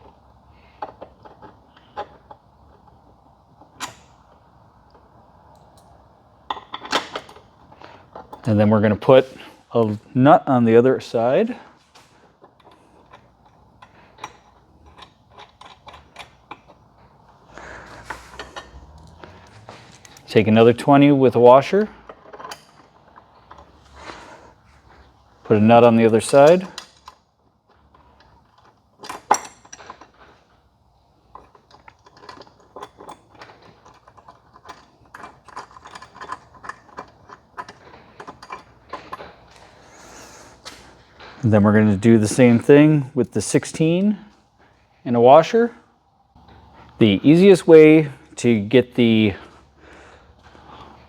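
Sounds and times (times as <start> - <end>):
metal hardware clinking: 3.6 - 10.1, 11.0 - 23.9, 25.5 - 27.3, 28.0 - 30.4, 31.3 - 39.8.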